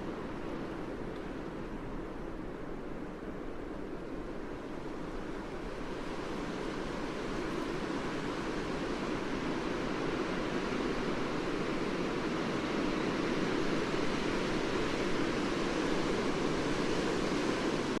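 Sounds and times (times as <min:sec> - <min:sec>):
blizzard wind against window: 0:04.5 - 0:18.0.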